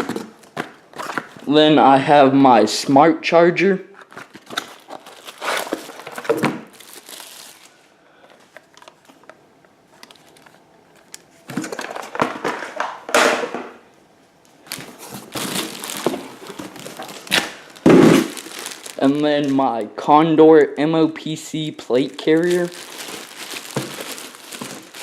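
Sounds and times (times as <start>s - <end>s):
packaging crinkling and rustling: 4.0s - 7.8s, 8.4s - 12.8s, 14.6s - 19.6s, 21.9s - 25.0s.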